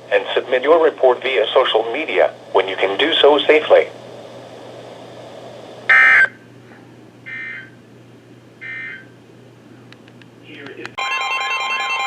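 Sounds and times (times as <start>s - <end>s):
low steady hum: 0.0s - 11.0s
digital data bursts: 5.9s - 6.4s.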